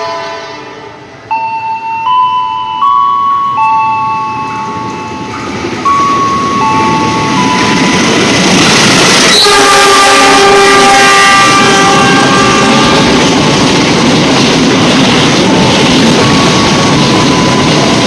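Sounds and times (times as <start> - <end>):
approaching train rumble: 0.0 - 18.0
electronic station chime tune: 1.3 - 8.6, 16.2 - 18.0.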